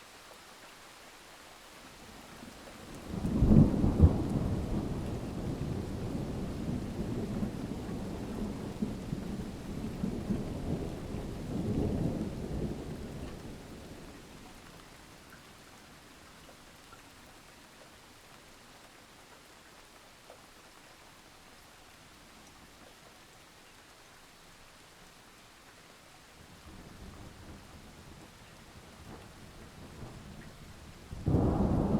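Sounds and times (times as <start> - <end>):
steady rain: 0.0 - 31.9
rolling thunder: 31.0 - 31.9.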